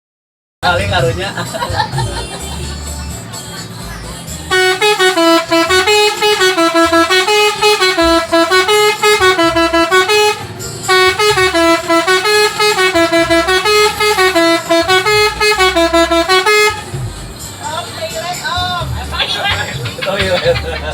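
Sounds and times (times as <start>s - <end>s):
bus air horn melody: 4.4s - 17.0s.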